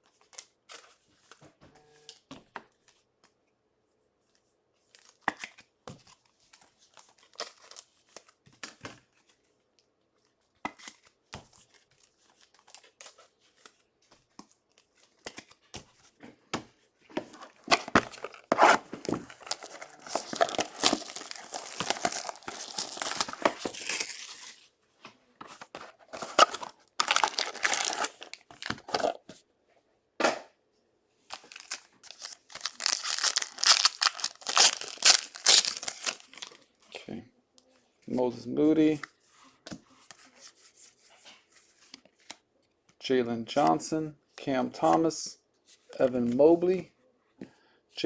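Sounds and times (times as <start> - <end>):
wrappers tearing and crinkling: 17.7 - 24.6, 26.1 - 29.2, 31.3 - 36.6.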